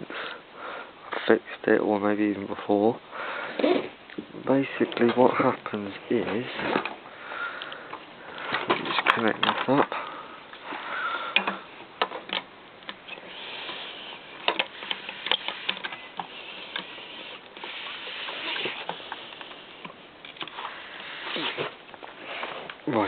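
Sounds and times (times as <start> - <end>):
plastic parts clicking and rattling: 7.9 - 10.0, 11.3 - 17.7.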